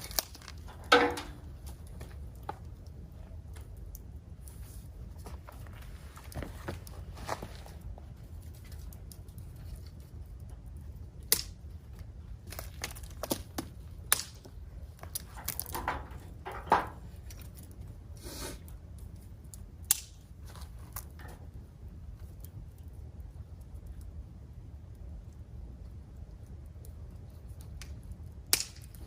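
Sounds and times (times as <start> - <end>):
crunching rustling sounds: 0.0 - 11.0, 20.3 - 22.4
wood fire crackling: 0.0 - 29.0.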